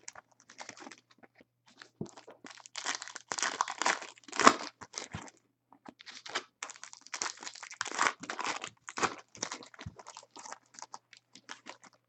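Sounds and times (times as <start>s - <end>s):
foil wrappers crinkling and tearing: 2.5s - 5.1s, 6.1s - 12.0s.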